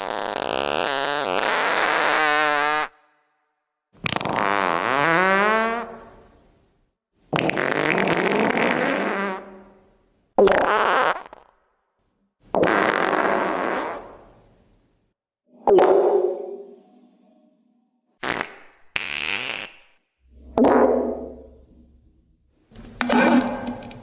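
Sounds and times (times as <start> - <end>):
fart sound effects: 0.0 - 3.1, 4.0 - 6.3, 7.3 - 9.7, 10.4 - 11.6, 12.5 - 14.4, 18.2 - 21.8, 23.0 - 24.0.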